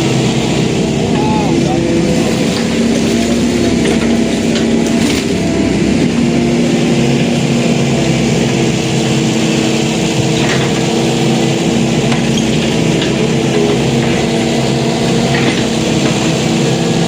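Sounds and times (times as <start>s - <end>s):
excavator diesel engine running: 0.0s - 17.0s.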